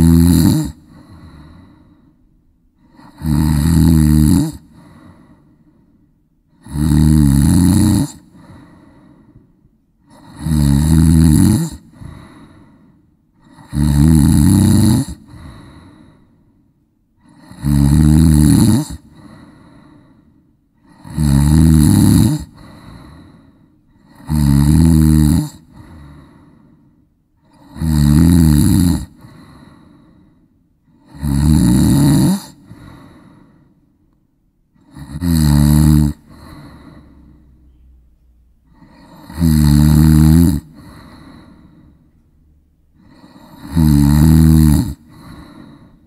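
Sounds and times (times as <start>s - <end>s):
loud rattling snore: 0.0s - 1.5s, 2.8s - 5.0s, 6.5s - 8.5s, 10.1s - 12.3s, 13.4s - 15.6s, 17.2s - 19.4s, 20.8s - 23.2s, 24.0s - 26.2s, 27.5s - 29.5s, 30.9s - 33.0s, 34.8s - 37.4s, 38.7s - 41.4s, 43.0s - 45.8s
soft breathing: 0.8s - 3.1s, 4.6s - 6.3s, 8.2s - 10.4s, 11.8s - 13.5s, 15.2s - 16.8s, 19.0s - 21.0s, 22.5s - 24.1s, 25.7s - 27.6s, 29.2s - 31.1s, 32.6s - 34.2s, 36.2s - 39.2s, 40.6s - 43.7s, 45.0s - 46.0s.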